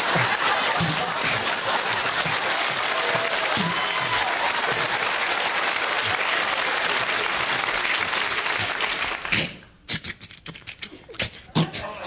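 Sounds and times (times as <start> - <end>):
audience applauding: 0.0 - 9.6.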